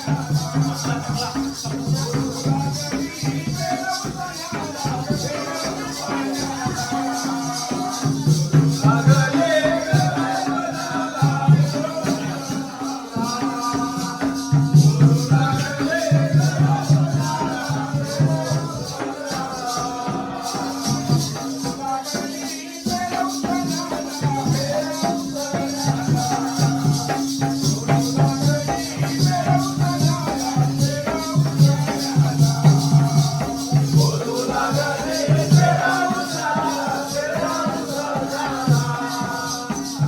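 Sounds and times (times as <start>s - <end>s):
drum strokes: 0.0s - 40.0s
man singing: 0.0s - 40.0s
small cymbals jingling: 0.0s - 40.0s.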